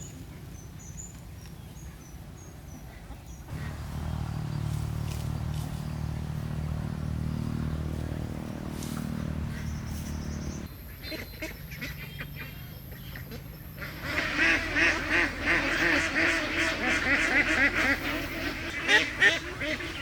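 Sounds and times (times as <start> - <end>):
low engine hum: 3.5 - 10.7, 12.2 - 20.0
ducks quacking: 3.5 - 20.0.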